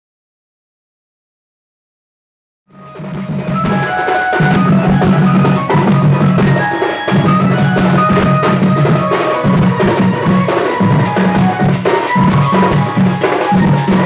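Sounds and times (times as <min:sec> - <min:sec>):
folk music with rapid drumming: 0:02.7 - 0:14.0.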